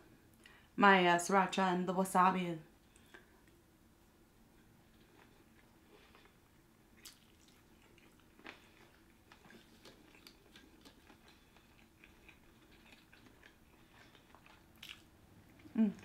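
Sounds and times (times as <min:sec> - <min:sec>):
person chewing: 0:04.6 - 0:16.0.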